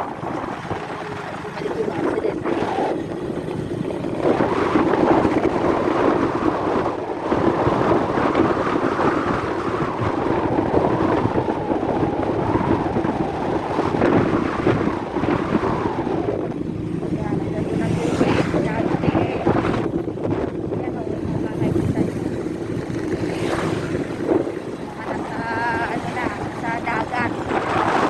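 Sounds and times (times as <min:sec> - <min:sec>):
motorcycle engine running: 0:00.0 - 0:06.1, 0:16.1 - 0:28.0
wind buffeting microphone: 0:00.0 - 0:28.0.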